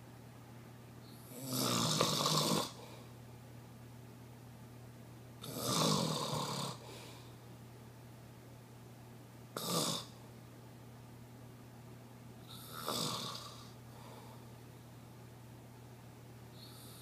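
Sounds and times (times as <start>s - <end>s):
steady low hum: 0.0s - 17.0s
person snoring: 1.2s - 3.0s, 5.4s - 7.2s, 9.6s - 10.2s, 12.5s - 13.8s.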